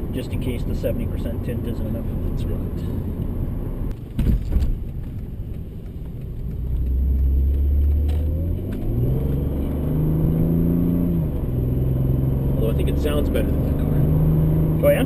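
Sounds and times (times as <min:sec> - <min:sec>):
car engine accelerating: 0:06.1 - 0:15.0.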